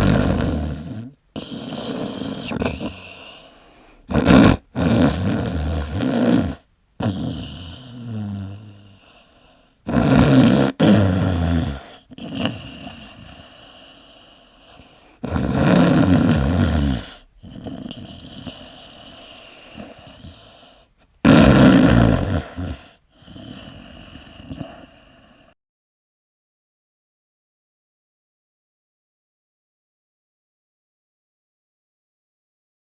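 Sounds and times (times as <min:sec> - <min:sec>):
quiet breathing: 0:00.0 - 0:04.1, 0:07.3 - 0:09.9, 0:11.6 - 0:15.3, 0:16.6 - 0:21.2, 0:22.4 - 0:25.6
person snoring: 0:00.0 - 0:25.6.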